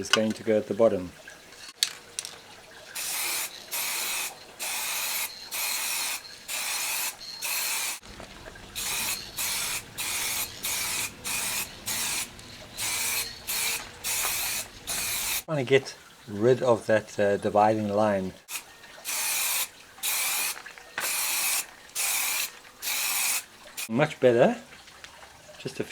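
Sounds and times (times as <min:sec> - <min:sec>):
spray can hissing bursts: 0:03.0 - 0:08.0, 0:08.8 - 0:15.5, 0:18.5 - 0:23.9.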